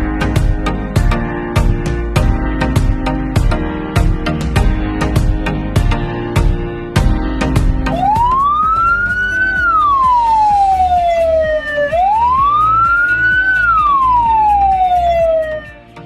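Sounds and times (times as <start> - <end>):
music with steady beat: 0.0 - 16.0
emergency siren wailing: 7.9 - 16.0.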